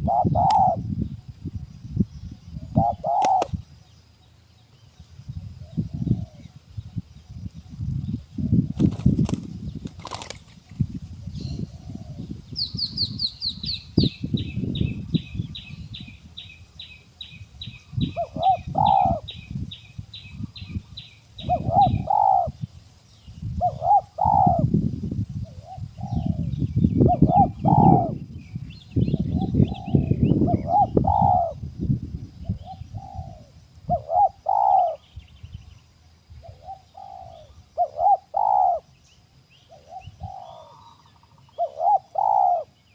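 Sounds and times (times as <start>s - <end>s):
dove cooing: 0.0s - 0.8s, 2.6s - 3.6s, 5.6s - 6.6s, 11.2s - 12.4s, 17.9s - 19.4s, 20.4s - 22.6s, 23.6s - 24.8s, 25.4s - 28.2s, 29.1s - 31.6s, 32.5s - 35.1s, 36.4s - 39.0s, 39.6s - 42.8s
wings fluttering: 3.0s - 3.6s, 8.5s - 11.2s.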